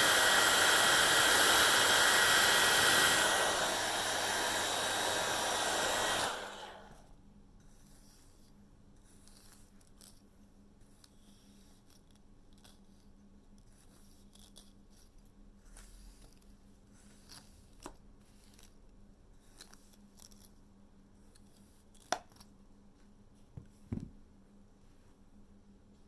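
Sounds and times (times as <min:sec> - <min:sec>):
faint rustles and scrapes: 0:07.5 - 0:23.9.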